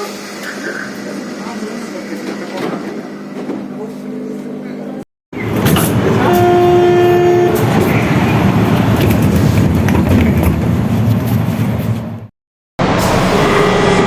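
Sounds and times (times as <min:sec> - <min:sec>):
train rumbling: 0:05.4 - 0:14.0.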